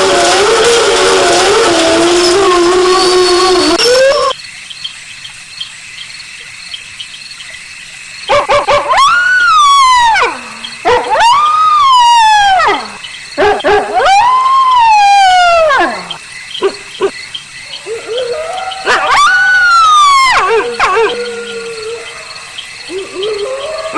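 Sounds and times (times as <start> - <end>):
wolf howling: 0.0 - 4.4, 8.6 - 23.9
wolf yelping: 8.3 - 23.9.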